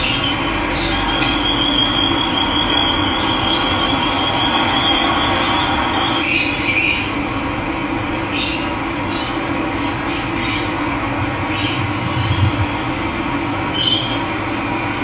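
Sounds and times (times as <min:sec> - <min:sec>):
bird calling: 0:13.6 - 0:15.0
running water rushing: 0:13.6 - 0:15.0
thin high tone: 0:13.6 - 0:15.0.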